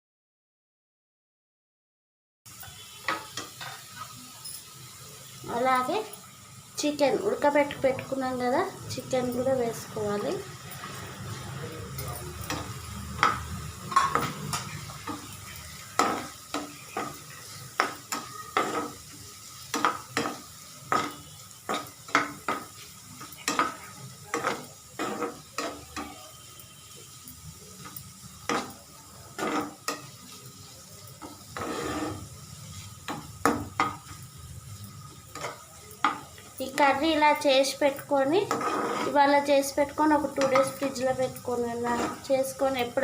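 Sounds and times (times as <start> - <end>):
faint sizzle: 2.5 - 43.0
metal spoon scraping a pan: 2.7 - 4.7, 12.0 - 26.7, 27.8 - 34.2, 35.0 - 37.1, 37.9 - 43.0.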